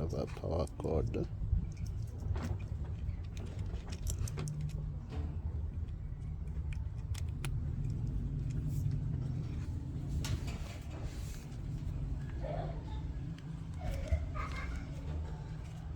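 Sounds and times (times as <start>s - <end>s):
steady low hum: 0.0s - 15.9s
hands handling parts clicking: 0.2s - 12.2s.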